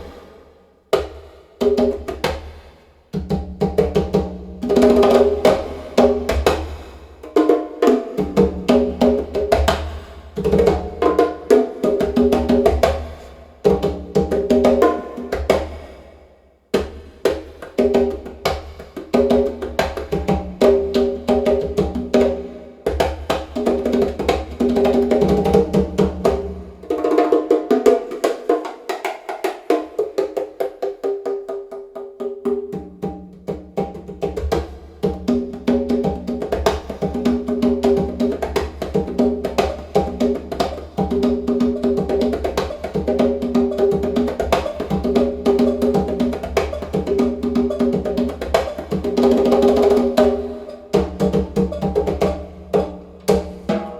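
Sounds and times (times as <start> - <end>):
percussion strikes: 32.7 - 53.9.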